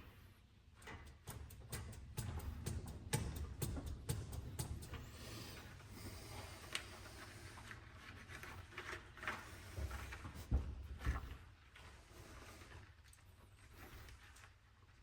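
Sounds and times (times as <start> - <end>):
tools and parts knocking: 0.8 - 5.3.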